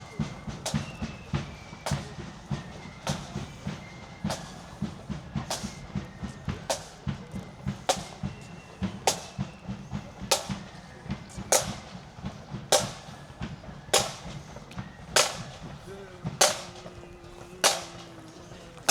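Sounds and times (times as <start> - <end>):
marching band drums: 0.0 - 18.9.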